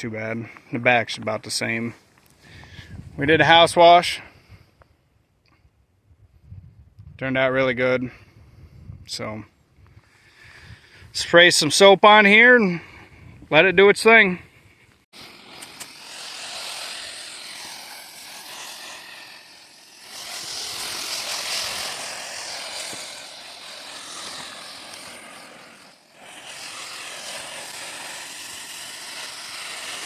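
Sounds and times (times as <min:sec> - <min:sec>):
pressure washer spraying: 0:15.2 - 0:30.0.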